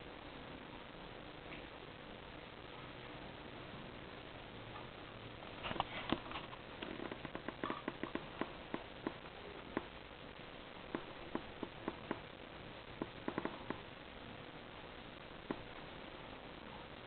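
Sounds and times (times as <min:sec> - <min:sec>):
hamster chewing crunchily: 0:05.6 - 0:09.9.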